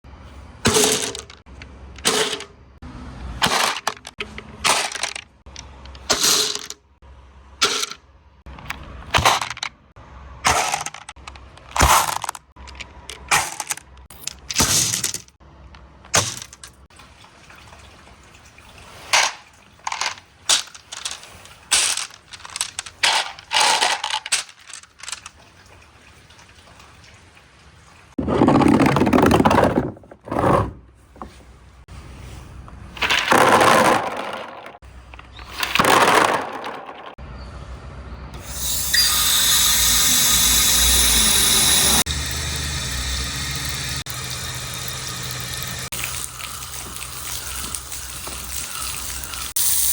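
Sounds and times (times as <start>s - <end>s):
flowing water: 16.9s - 20.5s, 24.9s - 28.2s, 38.4s - 49.9s
glass marbles clacking: 38.4s - 49.9s
marbles rolling on track: 38.4s - 49.9s.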